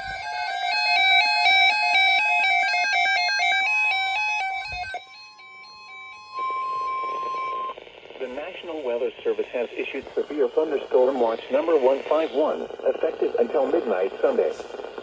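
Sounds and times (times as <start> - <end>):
faint steady alarm tone: 0.0 - 14.6
two-pitch electronic beeping: 3.6 - 7.8.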